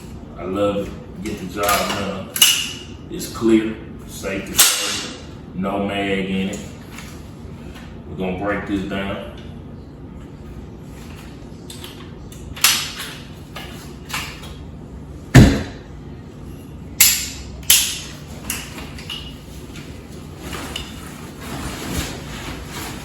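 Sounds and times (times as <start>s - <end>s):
heavier metal knock: 15.4s - 15.9s.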